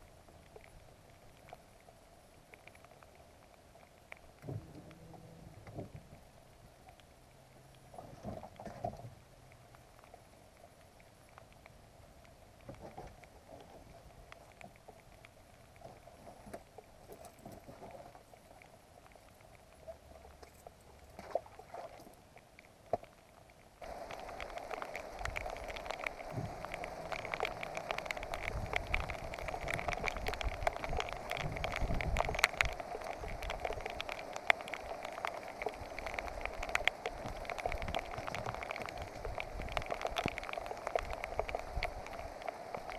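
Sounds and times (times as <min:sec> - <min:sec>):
steady dull hiss: 0:00.0 - 0:42.9.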